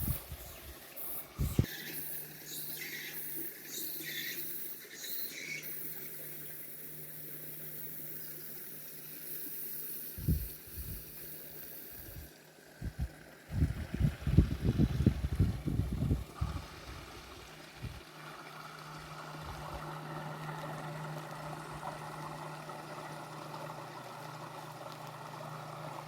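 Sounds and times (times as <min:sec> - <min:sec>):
wind buffets on microphone: 0:00.0 - 0:01.7, 0:10.2 - 0:11.0, 0:12.8 - 0:18.0
high insect-like hiss: 0:00.0 - 0:12.4
bird chirps: 0:00.4 - 0:05.9.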